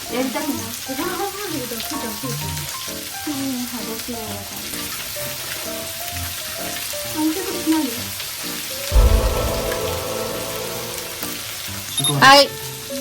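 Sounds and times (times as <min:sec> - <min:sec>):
food sizzling on hot plate: 0:00.0 - 0:13.0
loud low thump: 0:08.9 - 0:11.6
background music: 0:08.9 - 0:11.8.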